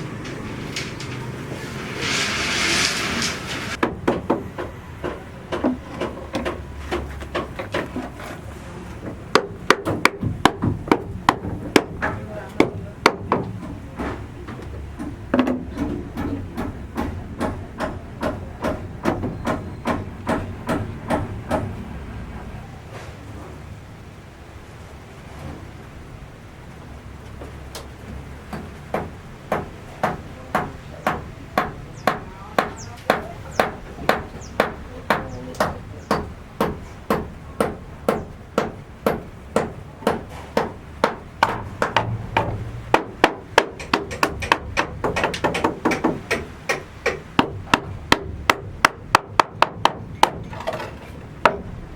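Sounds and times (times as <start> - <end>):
hammer blows: 9.1 - 21.9.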